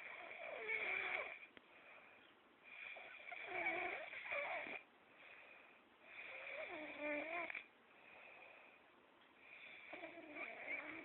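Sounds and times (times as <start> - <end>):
quiet breathing: 0.0 - 11.0
person snoring: 9.8 - 11.0.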